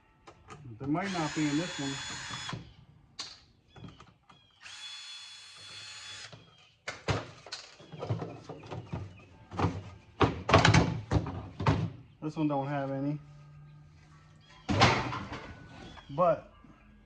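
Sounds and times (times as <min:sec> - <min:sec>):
power drill whining: 0:01.0 - 0:02.7, 0:04.6 - 0:06.4
metal knocks and clatter: 0:14.7 - 0:15.7.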